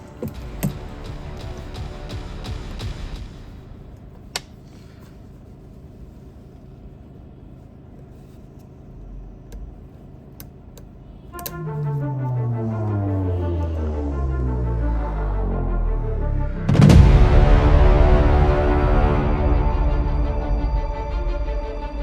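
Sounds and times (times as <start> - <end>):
background music: 0.0 - 4.0, 11.3 - 22.0
low steady hum: 0.0 - 22.0.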